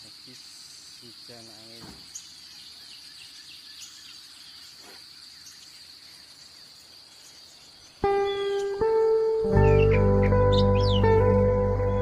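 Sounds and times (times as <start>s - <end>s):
faint bird chirps: 0.0s - 12.0s
music: 8.0s - 12.0s.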